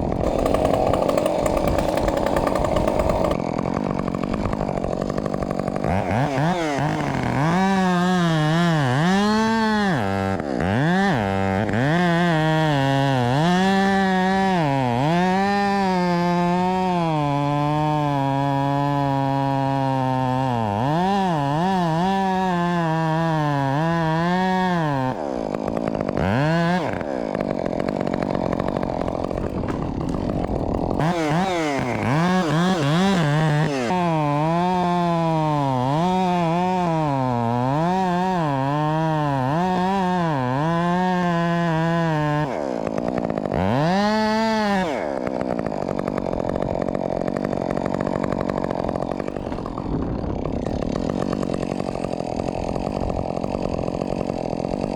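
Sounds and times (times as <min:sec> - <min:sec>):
chainsaw cutting wood: 0:00.0 - 0:54.9.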